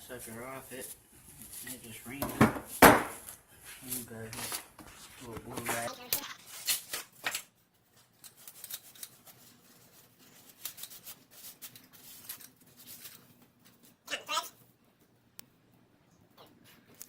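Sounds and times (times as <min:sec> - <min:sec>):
hand tools being handled: 0:05.6 - 0:14.0.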